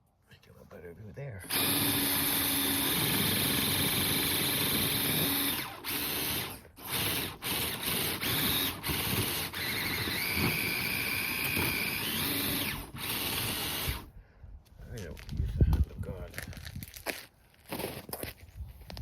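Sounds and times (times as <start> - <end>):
electric motor and gears whining: 1.4 - 14.1.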